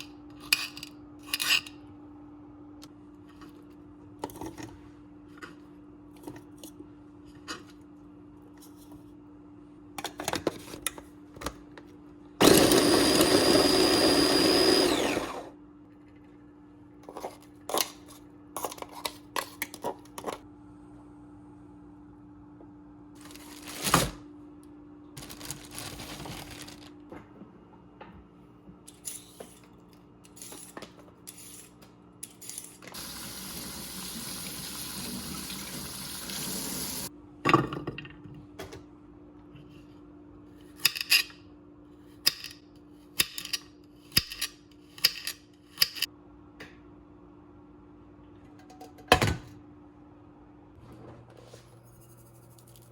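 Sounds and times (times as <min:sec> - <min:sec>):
food processor whining: 0:12.4 - 0:15.6.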